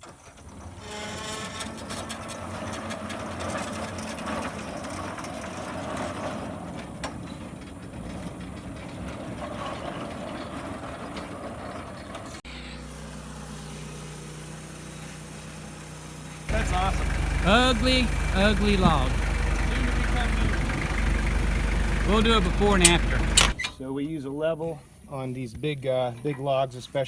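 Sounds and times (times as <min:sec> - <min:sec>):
engine running loud: 0:12.5 - 0:23.6
engine idling: 0:14.3 - 0:23.6.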